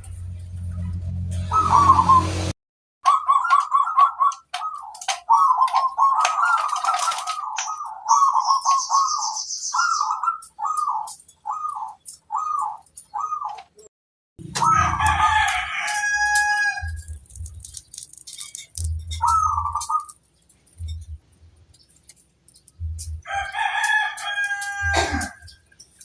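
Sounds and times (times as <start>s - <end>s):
low hum: 0.0s - 2.5s, 16.8s - 23.3s
dove cooing: 1.4s - 2.5s, 3.1s - 13.9s, 19.1s - 20.2s
small bird chirping: 3.2s - 13.9s, 16.8s - 23.3s.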